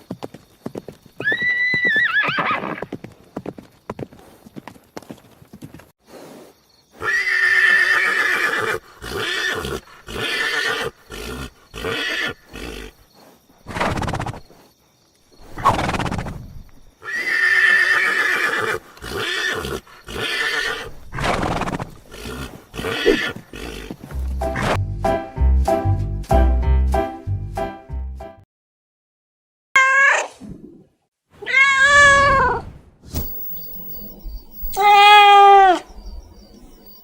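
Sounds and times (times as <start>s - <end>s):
horse whinnying: 1.2s - 2.9s, 7.0s - 12.9s, 17.0s - 24.0s, 31.4s - 32.6s, 34.6s - 35.9s.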